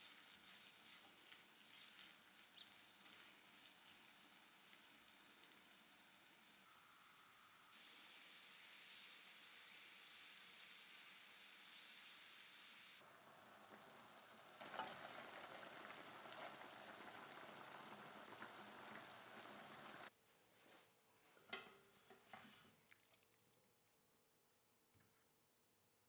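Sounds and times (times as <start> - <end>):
food sizzling in hot oil: 0.0 - 20.1.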